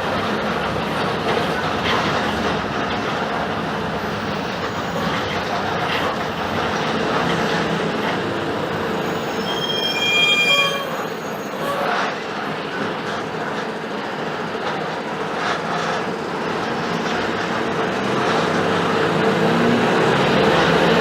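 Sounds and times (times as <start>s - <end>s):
bus diesel engine running: 0.0s - 10.1s, 10.8s - 21.0s
rolling noise: 0.0s - 21.0s
high-pitched squeal: 5.9s - 12.1s.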